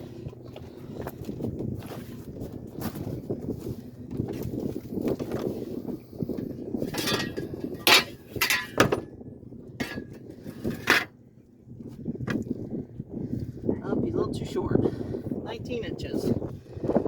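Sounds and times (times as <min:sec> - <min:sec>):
knocks and thumps of fish handling: 0:04.1 - 0:05.6, 0:06.8 - 0:09.1, 0:12.2 - 0:12.6.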